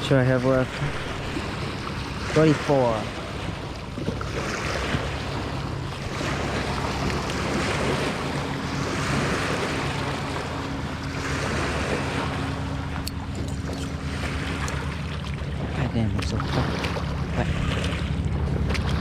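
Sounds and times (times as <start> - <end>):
steady low drone: 0.0 - 19.0
water sloshing around wading: 0.0 - 19.0
wind rumbling on microphone: 0.0 - 19.0.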